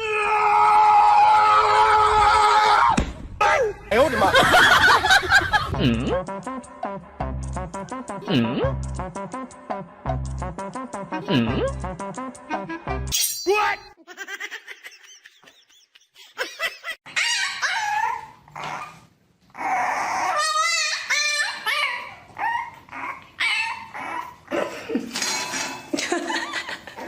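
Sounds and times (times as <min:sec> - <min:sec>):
dog whining high-pitched: 0:17.1 - 0:19.0, 0:19.6 - 0:24.4.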